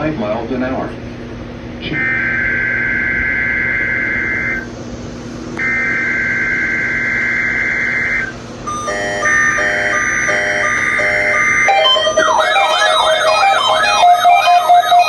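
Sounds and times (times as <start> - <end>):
faint steady hum: 0.0 - 15.0
buzzy warbling data tone: 8.7 - 15.0
low pulsing beeps: 8.7 - 15.0.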